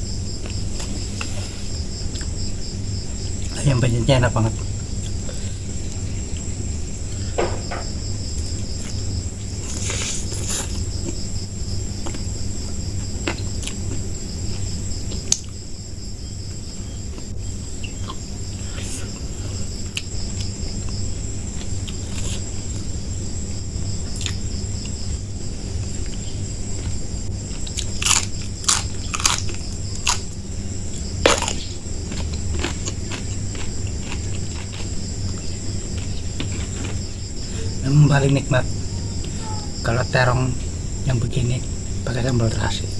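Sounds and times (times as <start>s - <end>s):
crickets chirring: 0.0s - 42.9s
chewing and crunching food: 0.3s - 2.4s, 8.4s - 15.6s, 16.5s - 23.0s, 24.0s - 37.8s.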